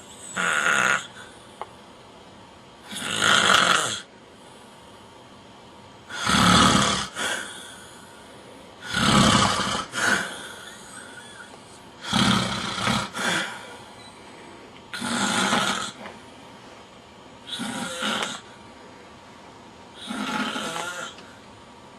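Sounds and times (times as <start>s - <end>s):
man snoring: 0.3s - 1.3s, 2.8s - 4.1s, 6.1s - 7.9s, 8.8s - 13.8s, 14.9s - 16.0s, 17.5s - 18.5s, 20.0s - 21.4s.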